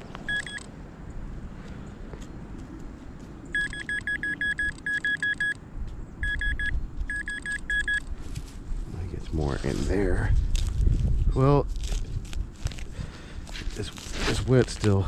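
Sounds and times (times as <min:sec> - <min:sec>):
metal detector beeping: 0:00.2 - 0:00.7, 0:03.5 - 0:05.6, 0:06.2 - 0:08.1.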